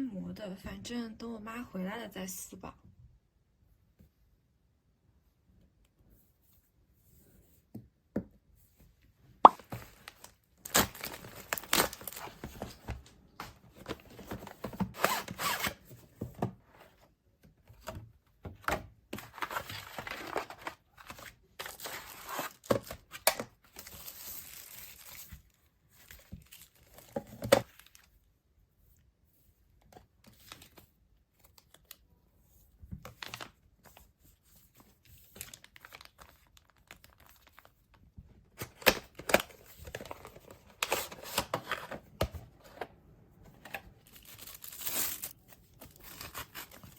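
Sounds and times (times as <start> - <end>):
packaging tearing and crinkling: 10.0 - 12.4, 35.4 - 37.7, 44.0 - 46.9.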